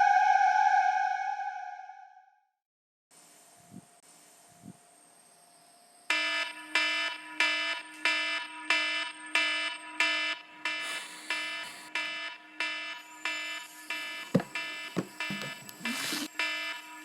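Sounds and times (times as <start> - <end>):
alarm ringing in pulses: 6.1 - 17.0.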